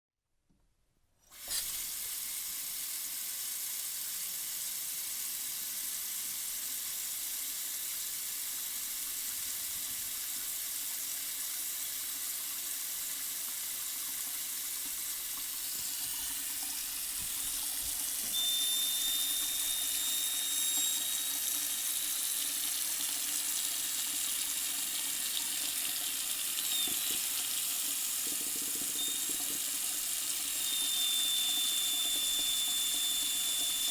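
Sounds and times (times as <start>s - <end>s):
faucet water running into sink: 1.3s - 33.9s
thin high whistle of faucet: 15.6s - 24.6s, 26.0s - 33.9s.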